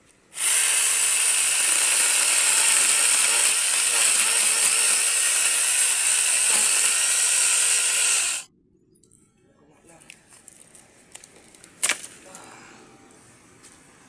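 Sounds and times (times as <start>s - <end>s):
mini chainsaw running: 0.4s - 8.4s.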